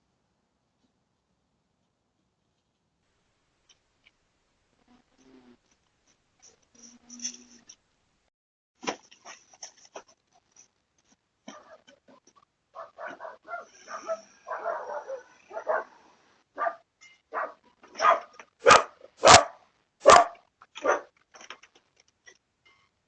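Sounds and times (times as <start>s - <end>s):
dog barking: 11.5s - 11.9s, 12.8s - 16.0s, 16.6s - 21.1s.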